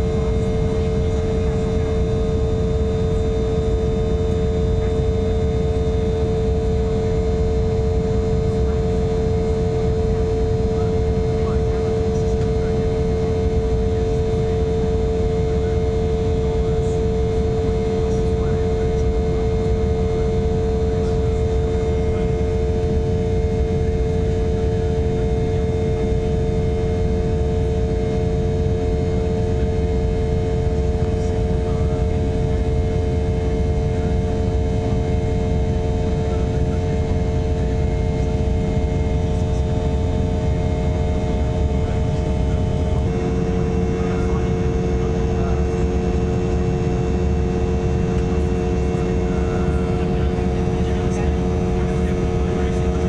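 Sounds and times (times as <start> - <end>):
jet airliner cabin engine drone: 0.0 - 53.0.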